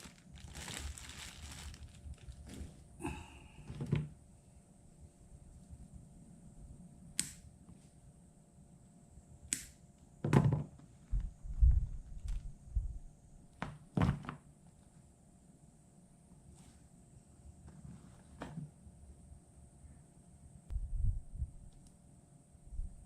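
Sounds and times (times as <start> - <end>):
objects thumping and clunking: 3.6 - 4.2, 10.2 - 10.9, 13.6 - 14.4
faint high whine: 14.7 - 23.0.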